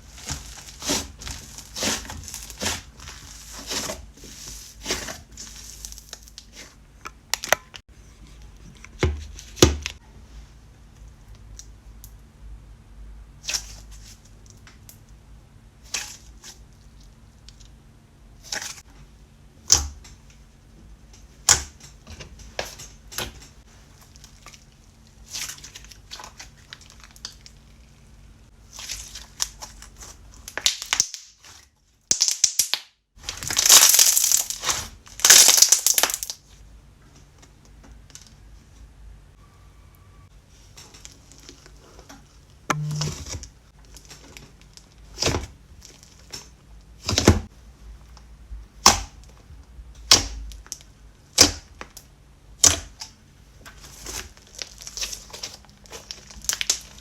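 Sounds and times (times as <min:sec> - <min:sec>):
slime crackling and clicking: 0:35.2 - 0:36.4.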